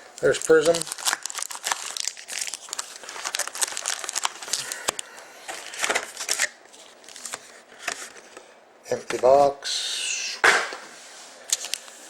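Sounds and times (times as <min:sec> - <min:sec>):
plastic wrappers crinkling: 0:00.0 - 0:08.3, 0:11.5 - 0:12.0.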